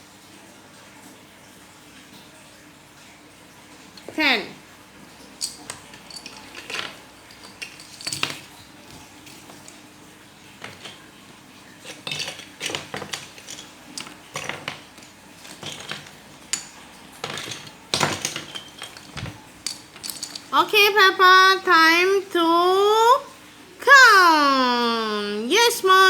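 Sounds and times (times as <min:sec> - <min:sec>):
plastic track pieces clicking: 0:05.4 - 0:08.6, 0:11.9 - 0:20.6.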